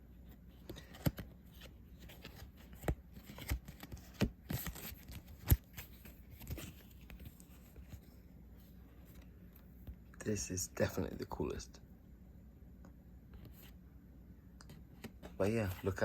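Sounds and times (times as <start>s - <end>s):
cards tapping and rustling: 0.6s - 8.2s, 14.6s - 16.0s.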